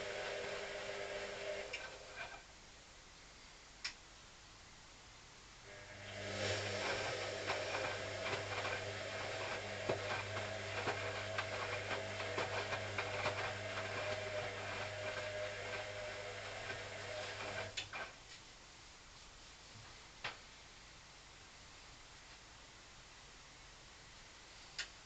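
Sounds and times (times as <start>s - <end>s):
washing machine running: 0.0s - 2.4s, 5.7s - 18.1s.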